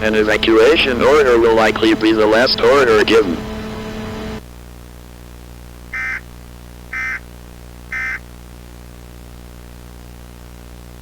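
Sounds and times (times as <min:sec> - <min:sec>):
steady low hum: 0:00.0 - 0:11.0
data tone bursts: 0:06.0 - 0:06.2, 0:06.9 - 0:07.2, 0:07.9 - 0:08.2.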